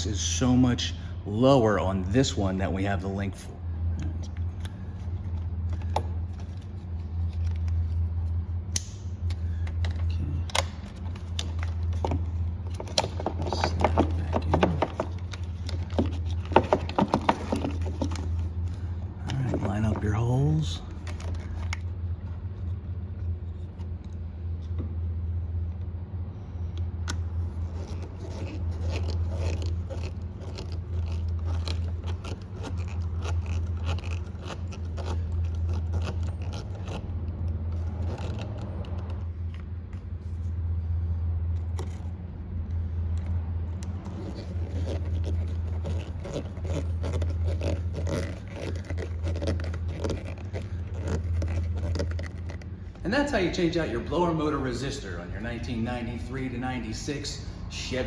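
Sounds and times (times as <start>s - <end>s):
steady low hum: 0.0s - 58.0s
screwdriver scraping and clicking: 4.6s - 20.2s, 20.9s - 21.9s, 27.1s - 39.6s, 43.8s - 52.8s.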